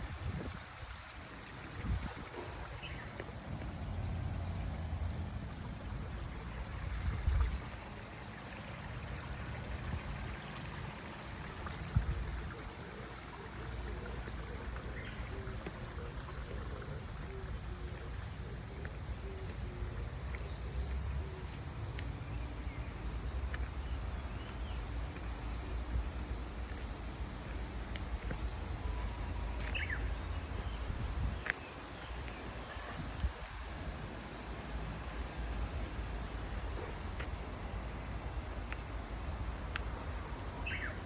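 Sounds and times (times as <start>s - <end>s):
road traffic rumble: 0.0s - 41.0s
small birds chirping: 1.8s - 6.2s, 40.3s - 41.0s.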